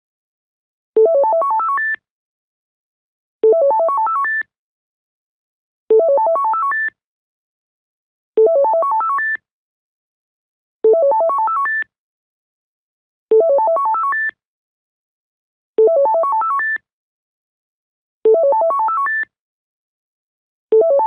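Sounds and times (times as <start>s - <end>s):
telephone electronic ringtone: 1.0s - 1.8s, 3.5s - 4.2s, 6.0s - 6.7s, 8.4s - 9.2s, 10.9s - 11.7s, 13.4s - 14.1s, 15.8s - 16.6s, 18.3s - 19.1s, 20.8s - 21.0s.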